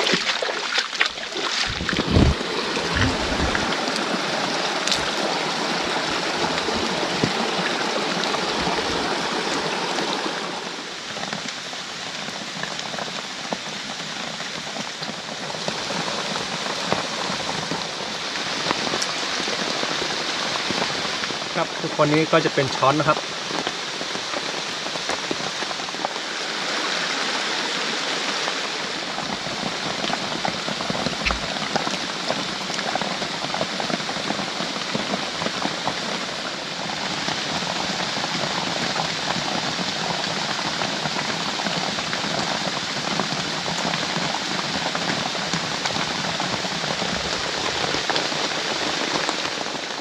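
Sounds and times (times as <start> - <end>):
heavy rain falling: 0.0 - 50.0
raindrops pattering close by: 0.0 - 50.0
low thump: 1.6 - 3.8, 31.2 - 31.5.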